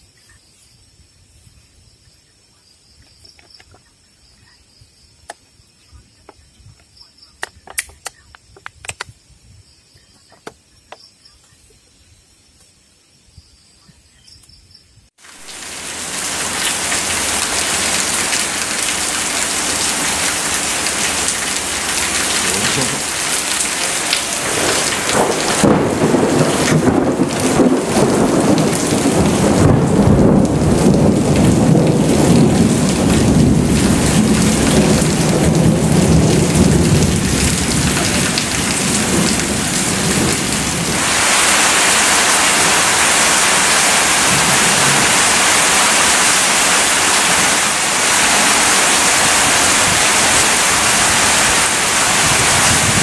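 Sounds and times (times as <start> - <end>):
heavy rain pouring: 15.2 - 53.0
thunder rumbling: 15.3 - 53.0.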